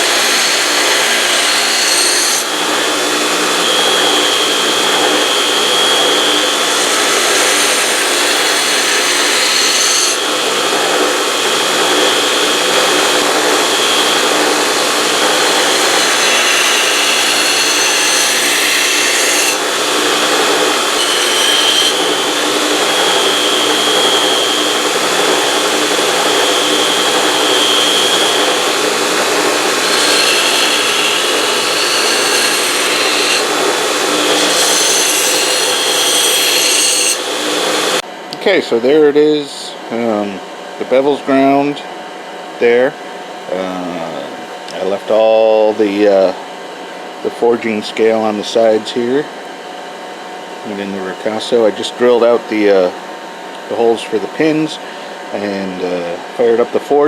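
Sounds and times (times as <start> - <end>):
power grinder grinding metal: 0.0 - 38.0.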